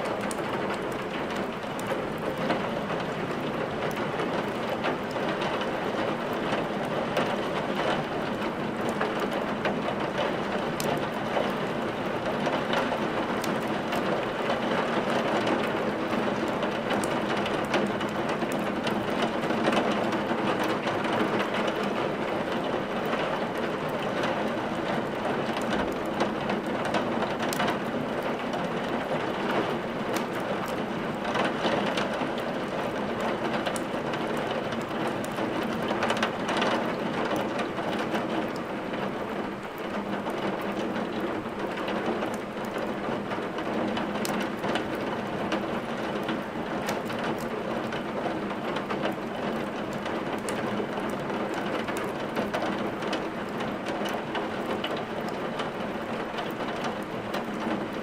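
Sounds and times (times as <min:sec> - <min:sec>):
wood fire crackling: 0:30.0 - 0:31.2, 0:46.2 - 0:48.0, 0:48.6 - 0:58.0.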